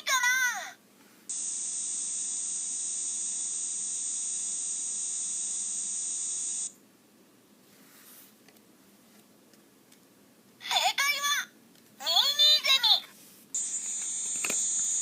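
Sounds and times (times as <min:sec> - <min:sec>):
high-pitched cicada buzz: 0:01.3 - 0:06.7, 0:13.6 - 0:15.0.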